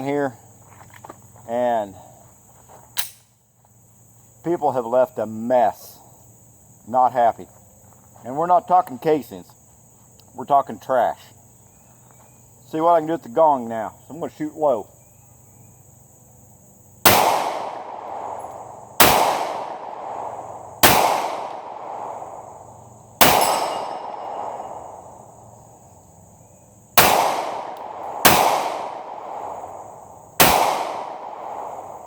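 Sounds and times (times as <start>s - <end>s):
gunshots with echo: 17.1s - 22.6s, 23.2s - 25.0s, 27.0s - 32.0s.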